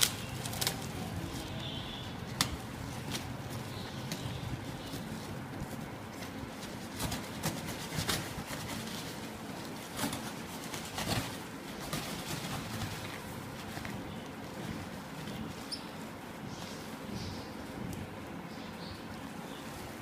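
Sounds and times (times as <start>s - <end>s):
birds calling: 0.0s - 20.0s.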